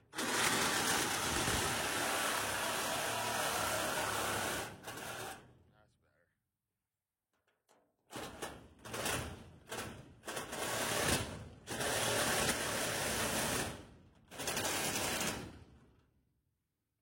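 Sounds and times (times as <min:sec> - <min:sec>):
power saw cutting: 0:00.0 - 0:05.4.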